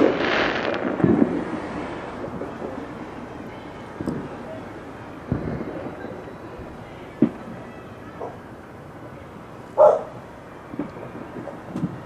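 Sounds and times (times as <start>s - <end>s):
dog barking: 9.8s - 10.1s.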